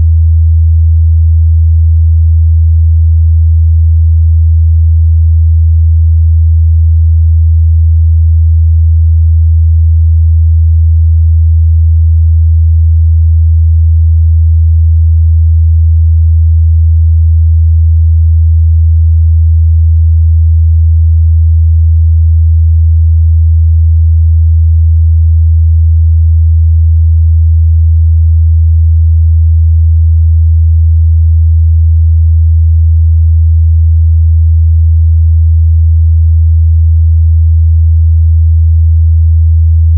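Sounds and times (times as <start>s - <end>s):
low sine-wave test tone: 0.0s - 39.9s.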